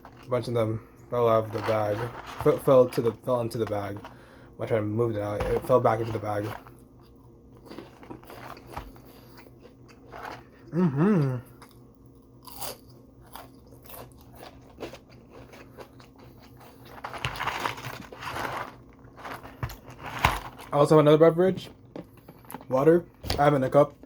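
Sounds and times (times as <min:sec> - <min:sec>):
person humming briefly: 0:10.7 - 0:11.6
crunching crispy fried food: 0:11.5 - 0:20.8.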